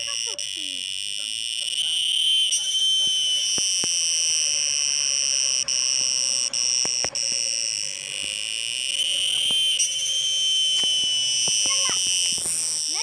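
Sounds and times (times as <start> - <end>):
crickets trilling: 0.0 - 13.0.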